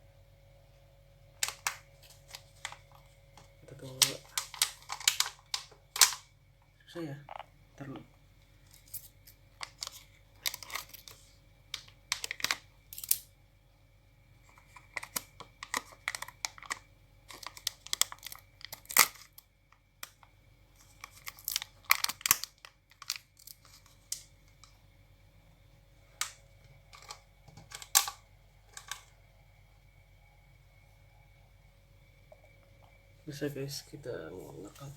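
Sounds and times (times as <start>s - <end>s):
plastic packaging tearing and crinkling: 3.8s - 6.2s, 8.7s - 13.3s, 14.5s - 24.3s.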